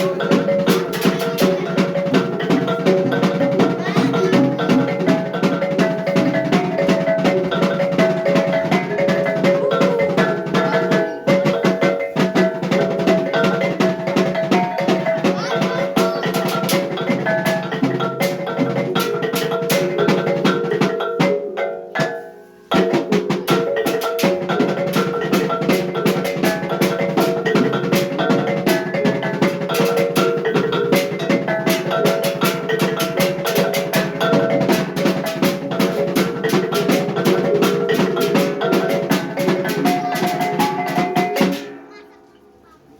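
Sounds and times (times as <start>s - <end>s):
tuned gongs melody: 0.0s - 17.2s
rapid drum beats: 0.0s - 42.1s.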